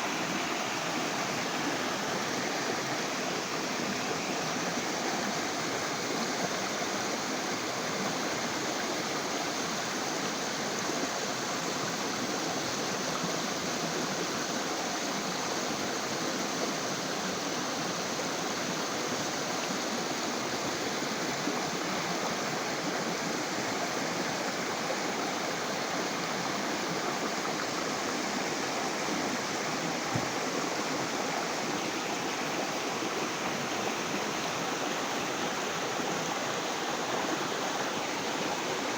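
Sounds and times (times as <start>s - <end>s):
water rushing: 0.0s - 16.1s, 16.8s - 38.9s.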